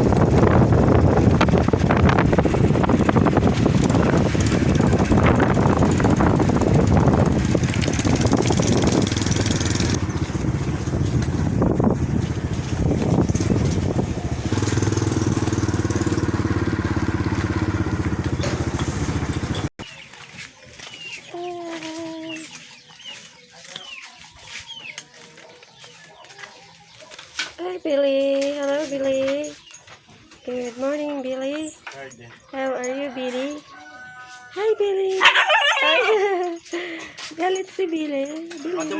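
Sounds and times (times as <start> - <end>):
motor hum: 0.0 - 19.7
wind buffeting microphone: 0.0 - 19.8
small birds chirping: 0.0 - 38.9
chicken calling: 33.0 - 37.2.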